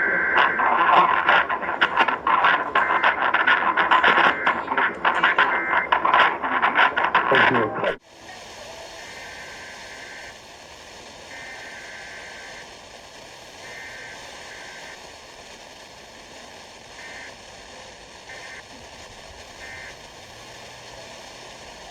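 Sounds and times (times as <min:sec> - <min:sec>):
buzzing digital data bursts: 0:00.0 - 0:08.0, 0:11.3 - 0:12.6, 0:13.6 - 0:15.0, 0:19.6 - 0:20.0
radio static: 0:00.0 - 0:21.9.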